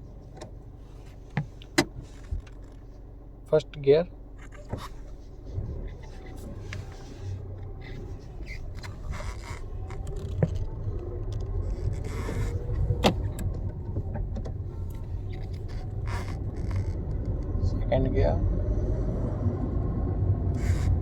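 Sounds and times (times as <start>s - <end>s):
car engine and road rumble: 0.0s - 21.0s
sharp clicks in car cabin: 0.2s - 3.6s, 4.4s - 17.5s.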